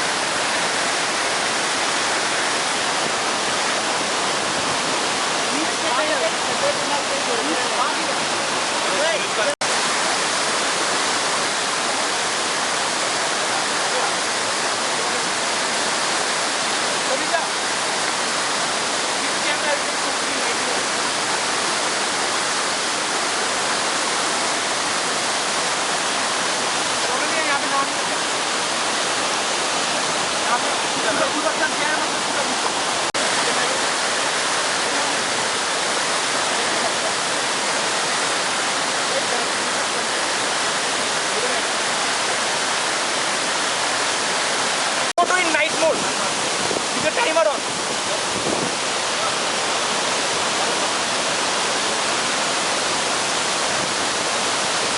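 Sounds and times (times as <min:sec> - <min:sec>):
waterfall rushing: 0:00.0 - 0:54.9.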